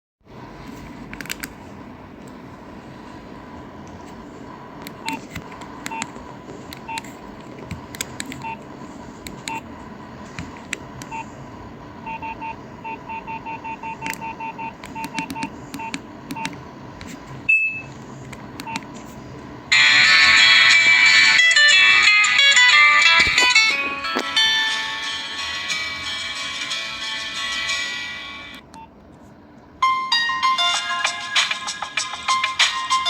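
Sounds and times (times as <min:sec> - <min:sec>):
phone keypad beeps: 0:12.1 - 0:16.5, 0:18.6 - 0:18.8
phone ringtone playing: 0:19.7 - 0:28.6, 0:29.8 - 0:33.0.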